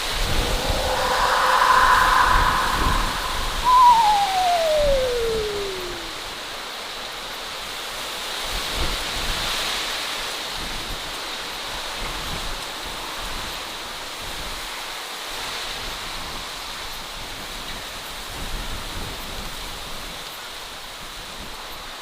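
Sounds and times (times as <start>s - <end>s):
steady rushing ambient noise: 0.0s - 6.2s.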